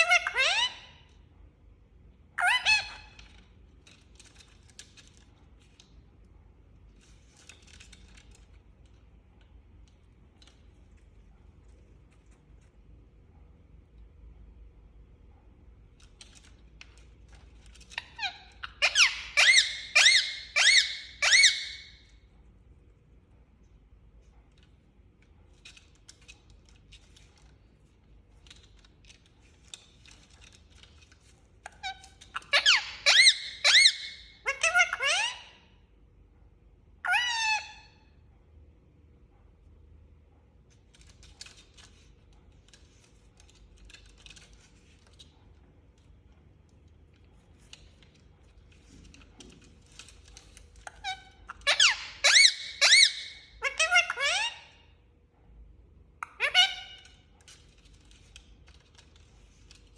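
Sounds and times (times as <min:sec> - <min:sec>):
parakeet squawking: 0:00.0 - 0:01.0, 0:02.4 - 0:03.2, 0:18.0 - 0:22.0, 0:31.8 - 0:35.6, 0:37.0 - 0:37.9, 0:50.8 - 0:54.9, 0:56.2 - 0:57.2
faint clicks and scratching: 0:03.1 - 0:18.6, 0:22.1 - 0:32.6, 0:38.9 - 0:51.7, 0:57.0 - 0:59.9.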